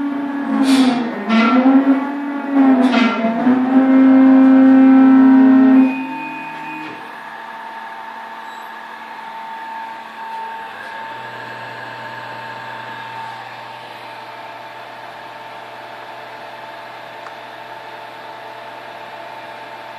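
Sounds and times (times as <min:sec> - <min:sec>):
low hum: 0:00.0 - 0:07.0
cnc router humming and whining: 0:00.0 - 0:19.9.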